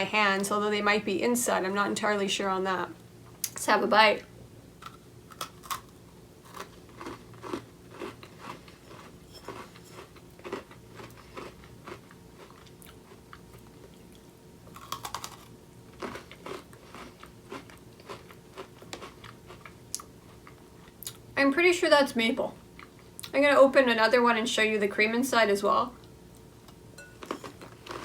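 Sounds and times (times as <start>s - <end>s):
cookie crunching while chewing: 4.8s - 21.2s, 27.1s - 28.0s.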